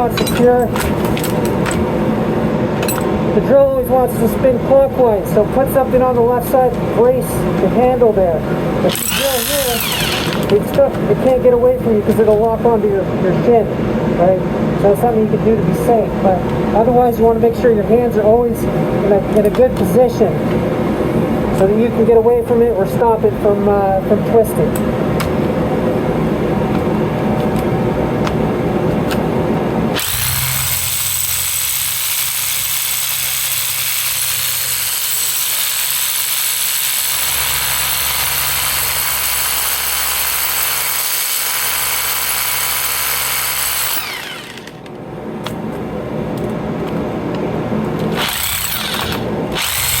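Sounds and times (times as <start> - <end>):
hammer drill boring into stone: 8.9 - 10.7, 30.0 - 44.9, 48.1 - 50.0.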